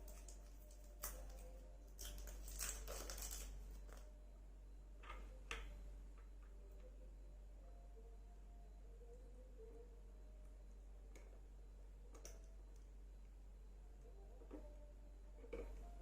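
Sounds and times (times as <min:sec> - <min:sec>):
plastic packaging crinkling: 0:02.0 - 0:04.0.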